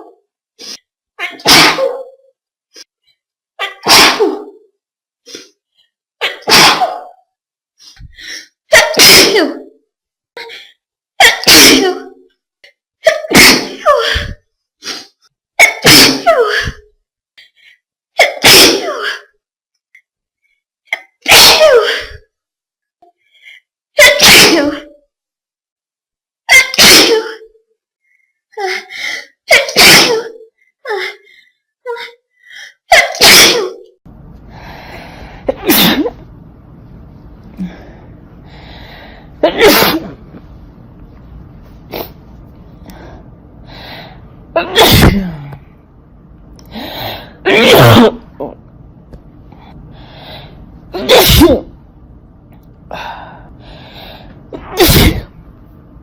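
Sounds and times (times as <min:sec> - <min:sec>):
loud sneezes: 0:01.2 - 0:02.2, 0:03.6 - 0:04.6, 0:06.2 - 0:07.2, 0:08.7 - 0:09.7, 0:11.2 - 0:12.2, 0:13.0 - 0:16.8, 0:18.2 - 0:19.3, 0:21.2 - 0:22.2, 0:24.0 - 0:24.8, 0:26.5 - 0:27.4, 0:29.5 - 0:30.4, 0:32.9 - 0:33.9, 0:35.5 - 0:36.2, 0:39.4 - 0:40.2, 0:44.6 - 0:45.5, 0:47.4 - 0:48.3, 0:51.0 - 0:51.8, 0:54.5 - 0:55.4.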